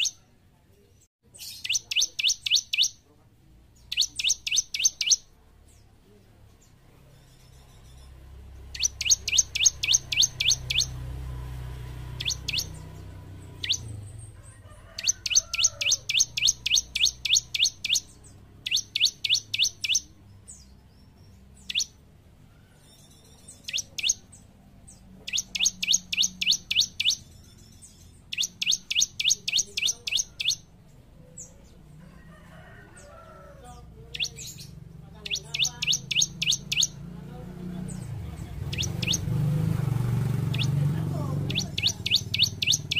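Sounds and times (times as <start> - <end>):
bird singing high sharp notes: 0.0 - 0.2, 1.4 - 3.0, 3.8 - 5.3, 7.1 - 11.2, 12.1 - 14.2, 15.0 - 22.0, 22.8 - 30.7, 34.2 - 37.0, 37.9 - 39.5, 40.5 - 42.9.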